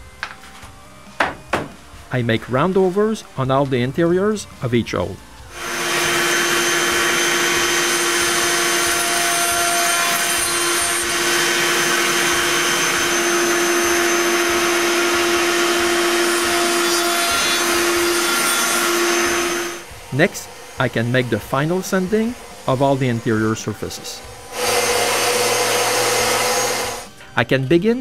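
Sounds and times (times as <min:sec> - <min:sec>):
electric router running: 0:05.2 - 0:27.2.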